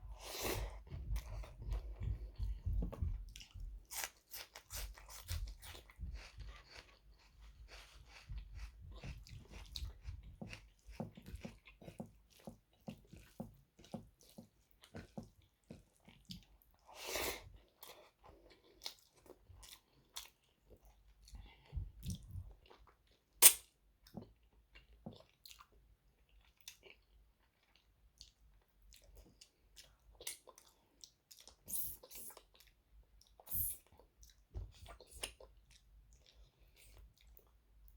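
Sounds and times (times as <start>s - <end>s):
chewing and biting food: 0.2s - 23.4s, 24.1s - 37.9s.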